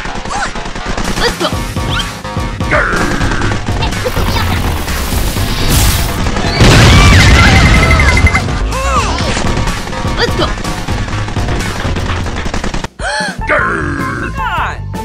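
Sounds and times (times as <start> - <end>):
comedy sound effects: 2.7 - 5.1, 7.3 - 9.2.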